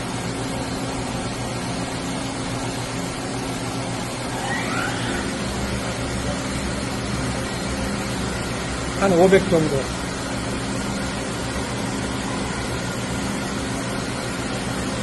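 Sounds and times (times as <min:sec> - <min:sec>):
machine spindle humming: 0:00.0 - 0:15.0
rising spindle whine: 0:03.6 - 0:08.7.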